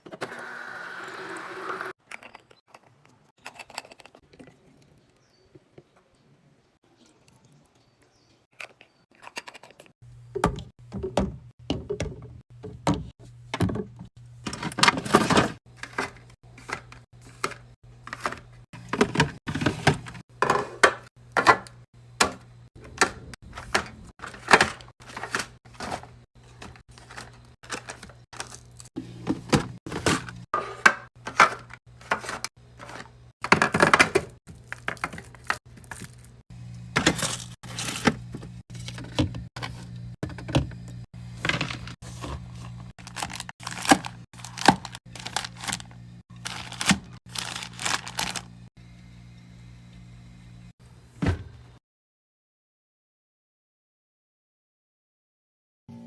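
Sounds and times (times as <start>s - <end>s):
packaging rustling: 24.2s - 28.9s, 41.4s - 48.6s.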